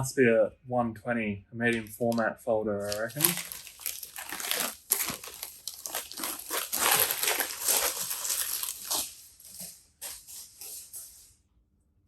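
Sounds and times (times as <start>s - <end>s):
packing wrap crinkling: 2.8s - 10.4s.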